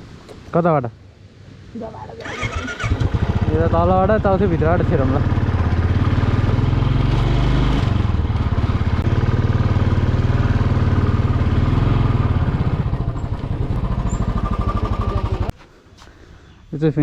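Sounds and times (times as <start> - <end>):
motorcycle engine running: 2.2 - 15.5.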